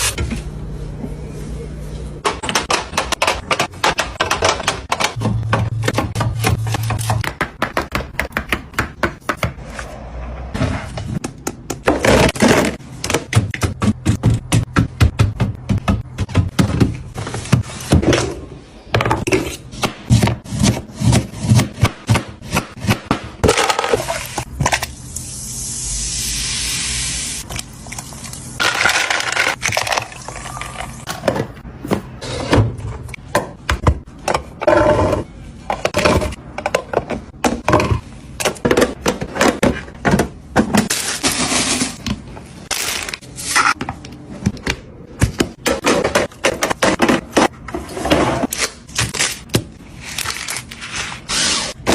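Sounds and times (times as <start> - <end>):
kitchen items clicking and scraping: 28.6 - 51.9.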